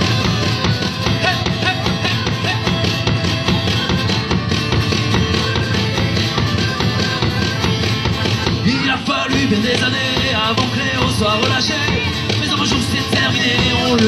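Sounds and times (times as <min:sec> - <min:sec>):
live band music: 0:00.0 - 0:14.0
percussive beat: 0:00.0 - 0:14.0.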